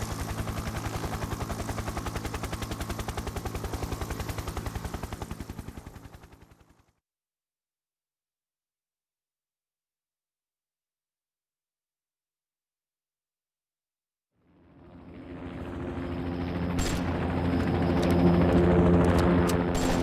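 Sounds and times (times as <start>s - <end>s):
machine-gun fire: 16.8s - 17.2s, 19.7s - 20.0s.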